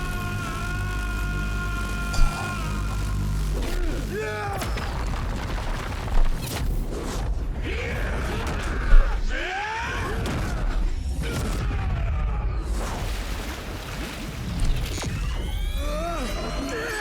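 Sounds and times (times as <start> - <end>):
low rumble: 0.0 - 6.4.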